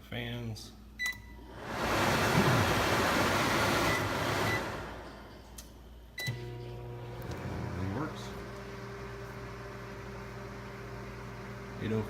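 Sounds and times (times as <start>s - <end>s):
steady low hum: 0.7s - 9.5s
vent hood fan rushing air: 1.4s - 6.0s.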